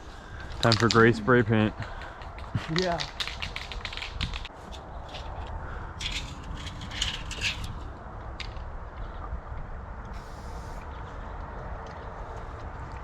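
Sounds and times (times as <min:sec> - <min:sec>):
spray can ball rattling: 0:02.0 - 0:04.5, 0:10.2 - 0:10.8
spray paint hissing: 0:10.2 - 0:10.9.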